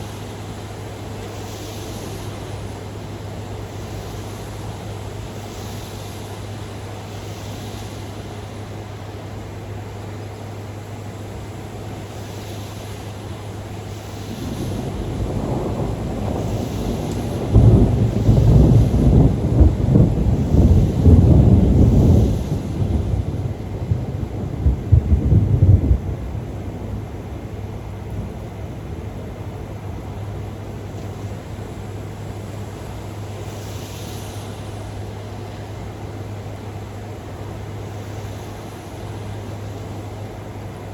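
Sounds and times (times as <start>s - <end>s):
steady hiss: 0.0s - 40.9s
thunder rumbling: 13.5s - 40.9s
thunder peal: 14.0s - 35.3s
brief hiss: 32.2s - 36.0s.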